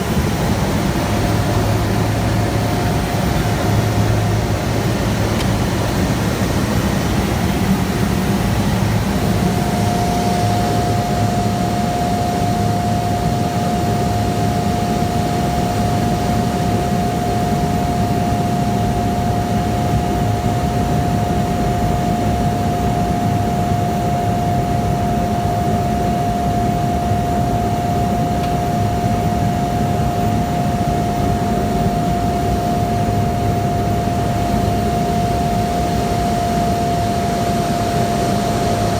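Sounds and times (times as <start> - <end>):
steady whine: 0.0 - 38.9
turboprop engine running: 0.0 - 38.9.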